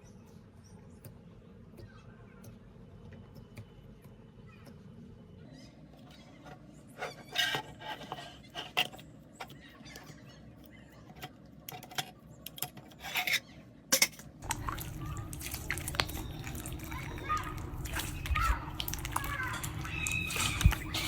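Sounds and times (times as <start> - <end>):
slime crackling: 14.4 - 21.0.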